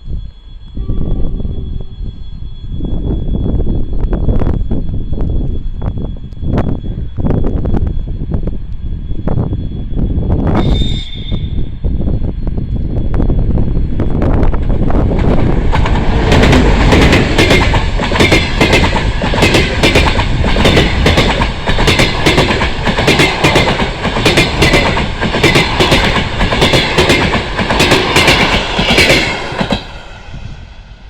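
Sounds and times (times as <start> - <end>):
passenger train passing: 0.0 - 31.0
wheels clickety-clack on rail joints: 14.5 - 29.9.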